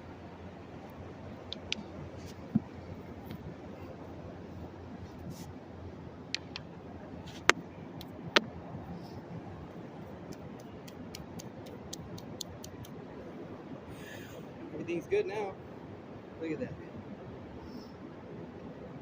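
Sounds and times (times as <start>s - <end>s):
steady background hiss: 0.0s - 19.0s.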